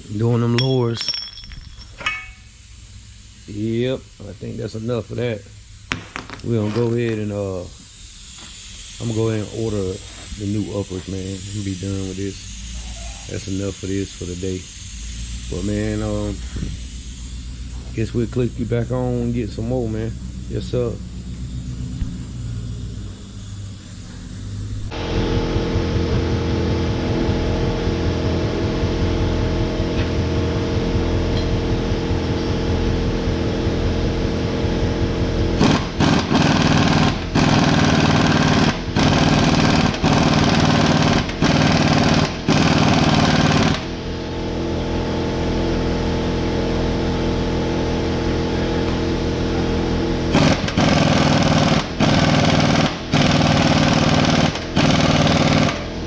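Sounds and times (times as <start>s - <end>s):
pneumatic air hammer rattling: 0.0s - 3.5s, 5.7s - 25.0s, 35.5s - 44.0s, 50.2s - 56.0s
steady machine hum: 0.0s - 56.0s.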